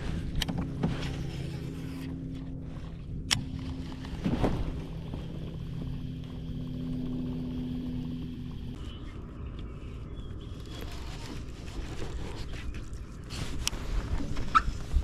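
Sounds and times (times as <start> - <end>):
low rumble: 0.0 - 10.8
boat motor humming: 0.0 - 15.0.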